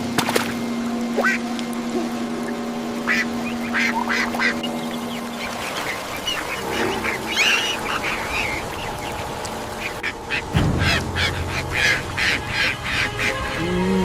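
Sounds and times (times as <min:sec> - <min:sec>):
steady low hum: 0:10.5 - 0:13.4.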